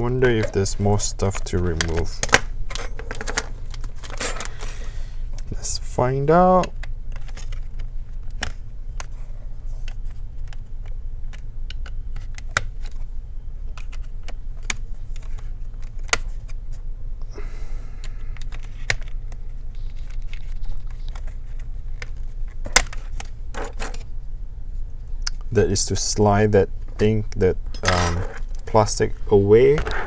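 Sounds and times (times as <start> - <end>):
steady low hum: 0.0 - 12.1, 21.4 - 30.0.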